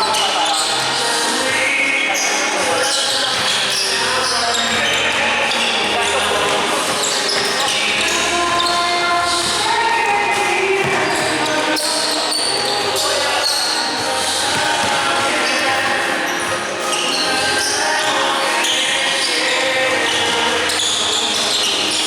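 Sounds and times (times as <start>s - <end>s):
basketball bouncing on hardwood: 4.6s - 11.7s, 14.2s - 16.1s.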